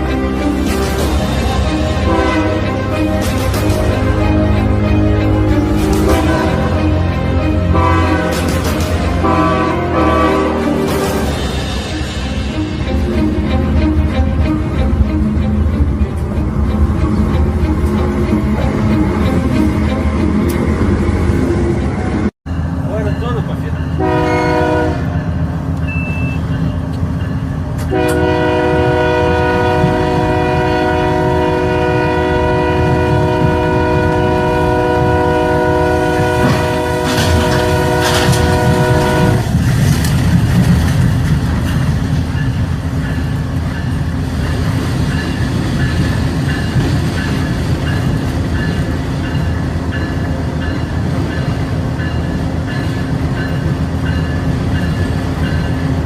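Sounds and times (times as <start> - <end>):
train horn blast: 0.0 - 12.4, 24.0 - 25.3, 27.9 - 39.6
train rumbling: 0.0 - 56.0.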